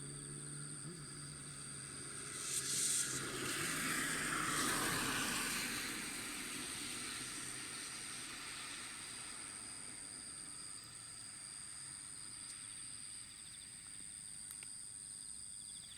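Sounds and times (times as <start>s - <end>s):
vehicle passing: 0.0s - 9.9s
insects trilling: 0.0s - 15.9s.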